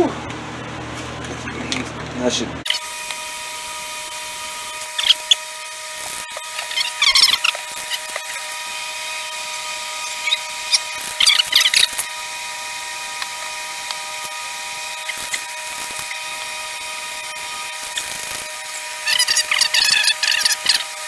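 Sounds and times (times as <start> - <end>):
small electric motor whining: 2.6 - 21.0.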